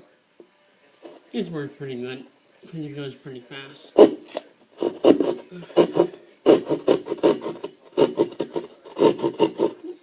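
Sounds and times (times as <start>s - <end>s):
hand saw cutting drywall: 4.8s - 9.8s.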